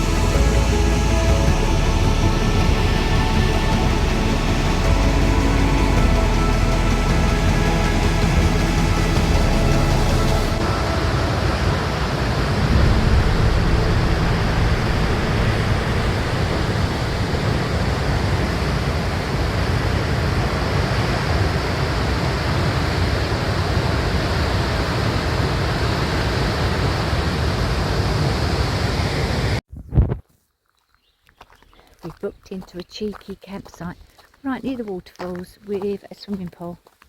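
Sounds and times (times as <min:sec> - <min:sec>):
waterfall rushing: 0:00.0 - 0:29.3.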